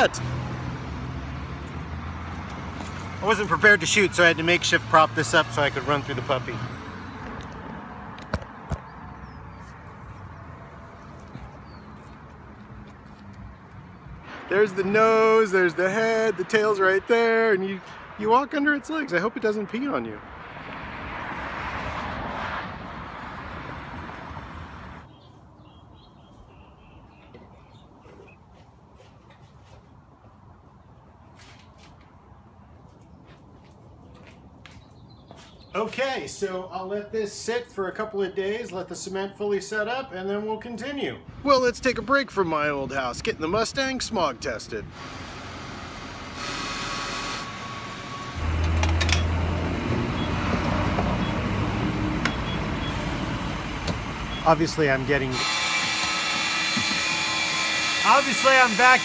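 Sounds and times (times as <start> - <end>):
car passing: 0.0 - 25.1, 47.4 - 59.0
motor humming: 55.4 - 58.8.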